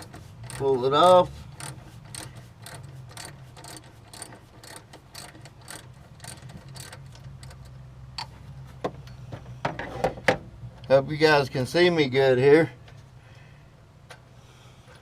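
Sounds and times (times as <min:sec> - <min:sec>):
socket ratchet clicking: 0:01.6 - 0:07.7.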